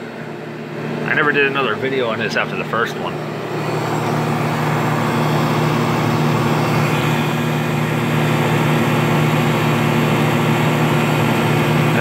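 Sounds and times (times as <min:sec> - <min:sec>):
air conditioner humming: 0:00.0 - 0:09.0.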